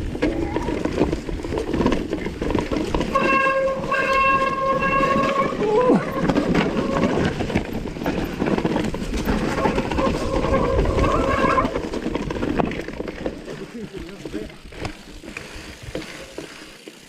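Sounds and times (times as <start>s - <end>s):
bicycle ride rattling: 0.0s - 17.0s
bicycle disc brakes squealing: 3.1s - 7.6s, 9.4s - 12.0s.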